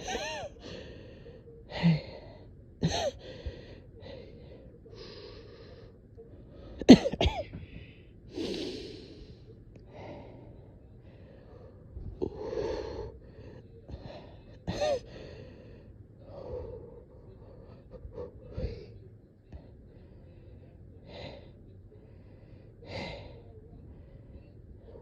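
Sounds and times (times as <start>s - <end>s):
person breathing with effort: 7.5s - 19.0s.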